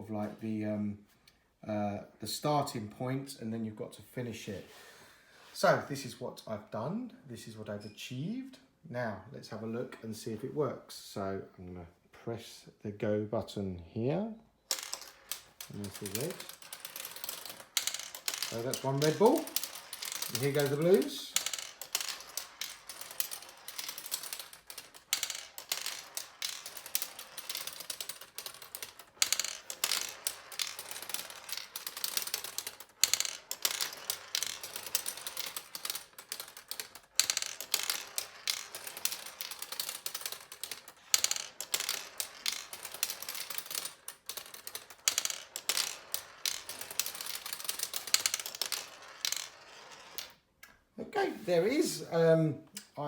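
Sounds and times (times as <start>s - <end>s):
marbles clicking down plastic board: 14.7s - 50.4s.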